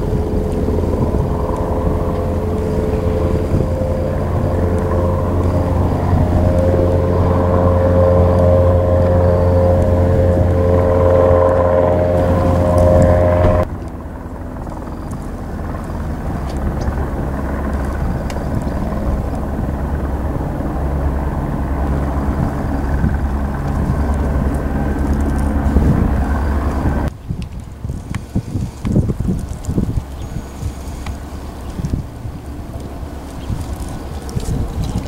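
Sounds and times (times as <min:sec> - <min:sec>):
higher-pitched engine note: 0:00.0 - 0:27.1
aircraft engine drone: 0:00.0 - 0:35.0.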